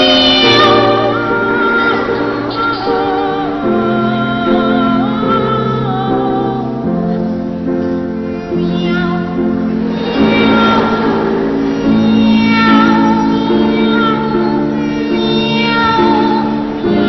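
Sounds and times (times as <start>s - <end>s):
high voice singing: 0.0s - 7.8s, 8.4s - 17.0s
sustained backing chords: 0.0s - 17.0s.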